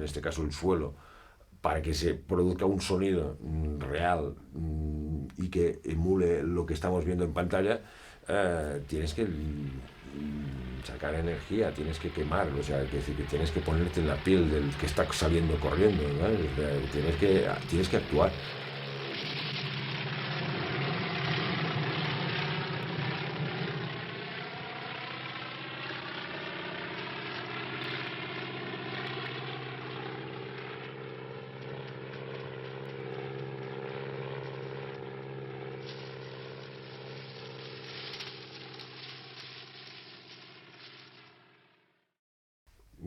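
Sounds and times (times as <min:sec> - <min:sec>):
engine-like drone: 0:02.8 - 0:41.4.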